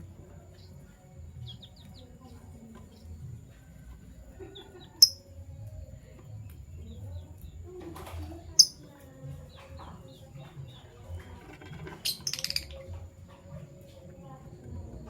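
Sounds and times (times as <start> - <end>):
lovebirds chirping: 4.4 - 5.4, 8.5 - 8.9.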